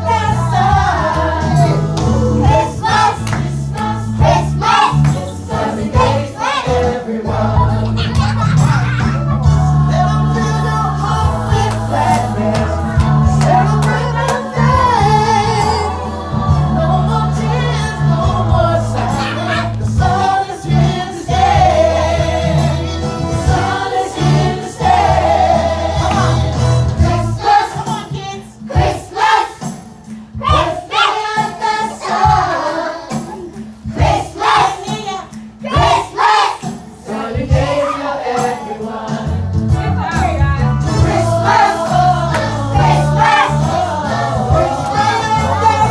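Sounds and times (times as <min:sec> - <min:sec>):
singing voices: 0:00.0 - 0:45.9
sustained bass notes: 0:00.1 - 0:06.3, 0:07.3 - 0:27.4, 0:39.4 - 0:45.9.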